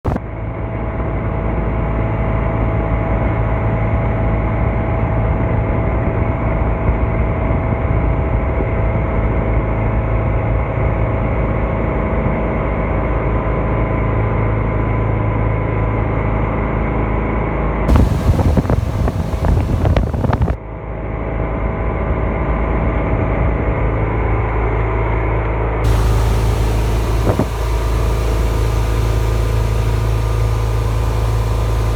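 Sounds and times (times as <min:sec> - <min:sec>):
motorboat engine humming: 0:17.9 - 0:20.6, 0:25.9 - 0:31.9.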